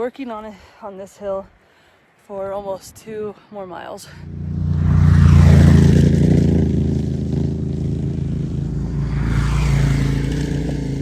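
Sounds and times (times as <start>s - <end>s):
vehicle engine running: 4.1s - 11.0s.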